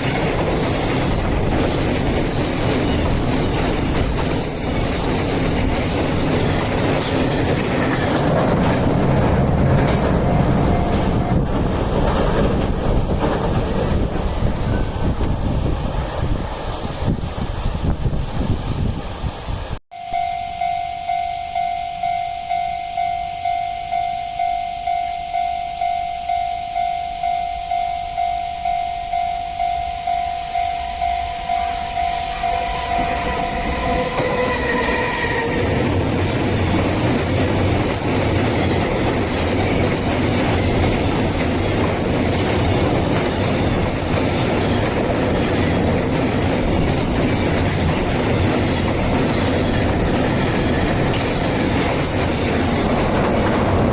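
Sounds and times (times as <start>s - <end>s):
wheels clattering over rails: 0.0s - 16.3s, 33.6s - 53.9s
train passing rumble: 0.0s - 19.8s, 27.7s - 53.9s
level crossing warning bell: 8.9s - 11.7s, 19.9s - 45.2s.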